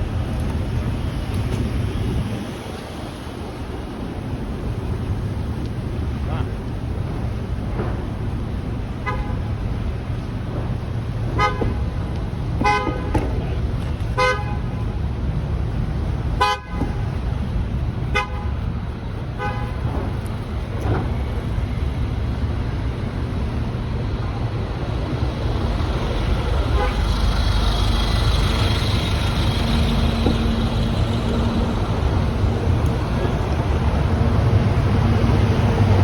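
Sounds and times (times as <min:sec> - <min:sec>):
low rumble of road noise: 0:00.0 - 0:36.0
car horns honking: 0:09.0 - 0:09.6, 0:11.3 - 0:11.9, 0:12.6 - 0:13.4, 0:14.1 - 0:14.9, 0:16.4 - 0:17.2, 0:18.0 - 0:18.7, 0:19.3 - 0:20.2, 0:26.7 - 0:27.2.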